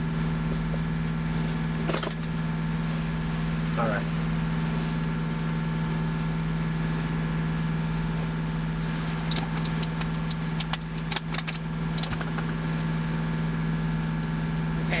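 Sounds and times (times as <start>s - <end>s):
sharp clicks and knocks: 9.1s - 12.6s.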